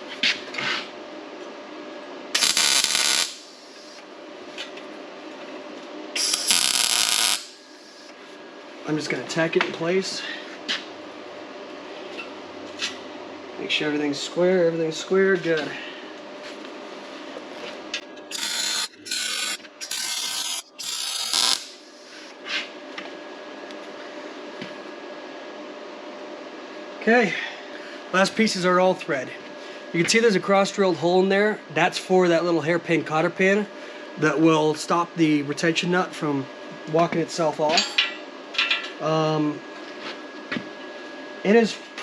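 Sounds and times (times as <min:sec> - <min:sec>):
arc welding crackling: 0:02.3 - 0:04.0, 0:06.1 - 0:08.1, 0:18.3 - 0:22.1.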